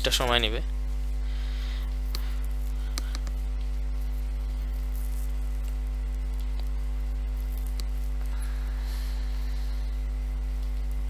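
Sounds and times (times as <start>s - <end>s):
electrical mains hum: 0.0s - 11.0s
faint clicks: 2.9s - 3.8s.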